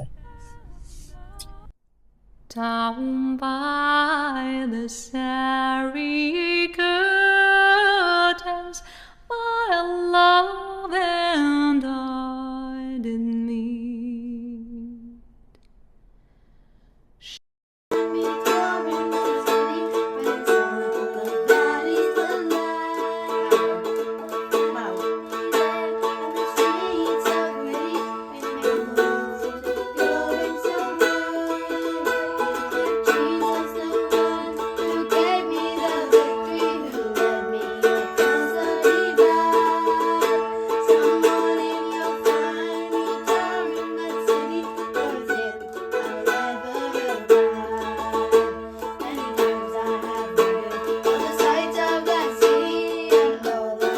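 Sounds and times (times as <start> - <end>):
mandolin folk melody: 17.9 - 53.9.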